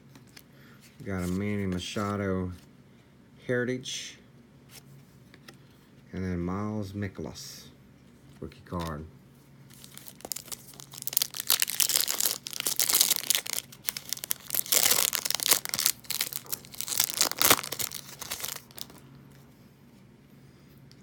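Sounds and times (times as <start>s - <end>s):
wrapper tearing and crinkling: 9.7s - 19.0s.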